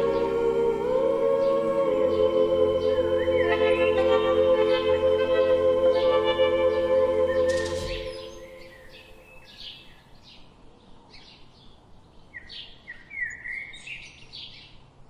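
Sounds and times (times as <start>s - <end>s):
slowed music chord: 0.0s - 9.3s
birds chirping: 0.0s - 10.0s.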